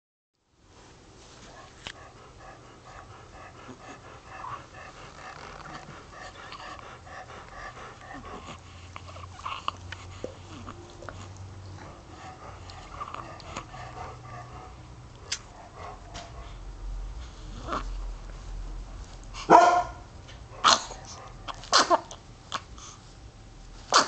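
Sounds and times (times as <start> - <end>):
snuffly rhythmic breathing: 1.3 - 24.0.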